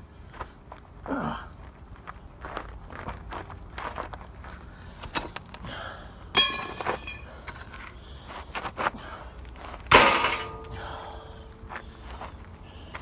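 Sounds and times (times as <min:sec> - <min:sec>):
metal clangs ringing: 0:06.3 - 0:07.4, 0:09.9 - 0:11.7.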